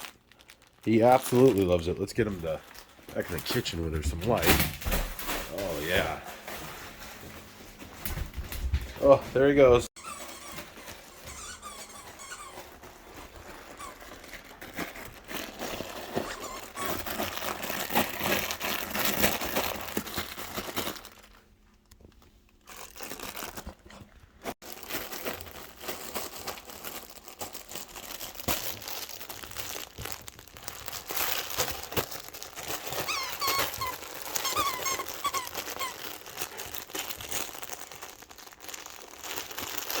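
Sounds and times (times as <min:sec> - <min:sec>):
dog chewing crinkly toy: 0:00.0 - 0:04.4, 0:09.5 - 0:40.0
toy squeaker squeaks: 0:10.0 - 0:12.7, 0:32.9 - 0:36.1.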